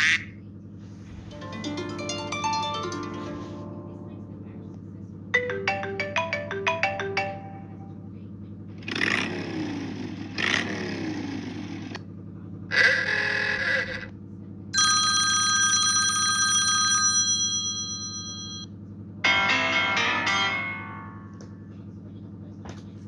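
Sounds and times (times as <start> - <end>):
low steady hum: 0.8 - 8.6
telephone bell ringtone: 1.1 - 4.8, 5.4 - 8.2, 14.8 - 21.4.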